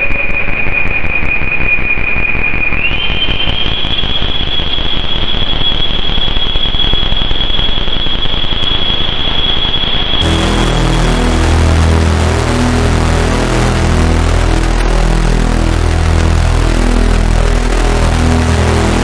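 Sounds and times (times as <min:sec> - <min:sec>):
synthesizer noise drone: 0:10.2 - 0:19.0.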